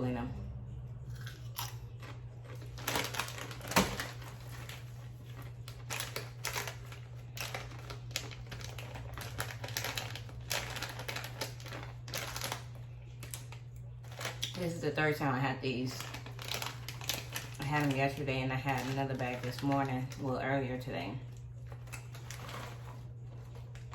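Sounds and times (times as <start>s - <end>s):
low electrical hum: 0.0s - 23.9s
chips being crunched: 1.2s - 14.7s.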